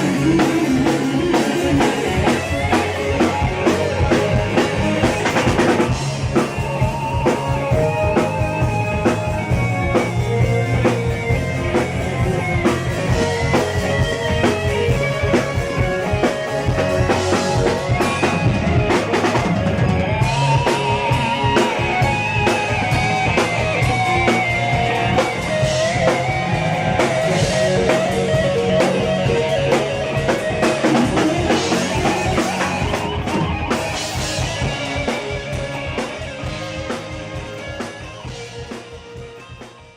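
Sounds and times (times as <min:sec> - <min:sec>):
drum kit steady beat: 0:00.0 - 0:39.9
guitar: 0:00.0 - 0:39.9.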